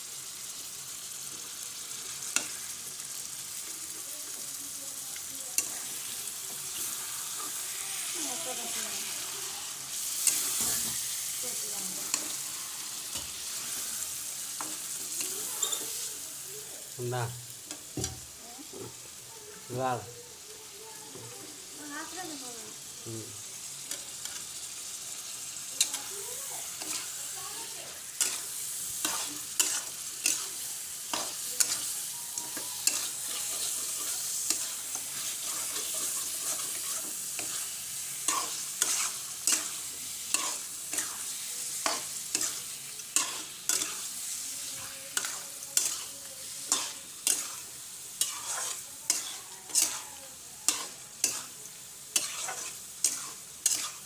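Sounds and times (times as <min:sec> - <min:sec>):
curry sizzling in a pan: 0:00.0 - 0:54.0
spatula scraping and knocking pan: 0:38.3 - 0:44.1, 0:44.7 - 0:50.0, 0:52.2 - 0:54.0.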